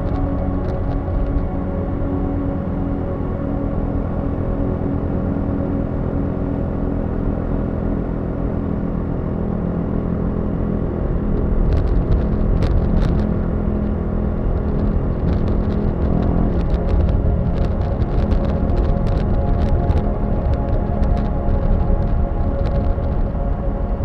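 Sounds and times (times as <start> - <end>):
motorcycle engine running: 11.3 - 23.3.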